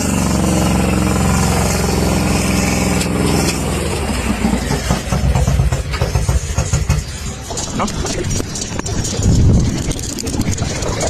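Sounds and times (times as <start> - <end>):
motorcycle engine running: 0.0 - 11.0.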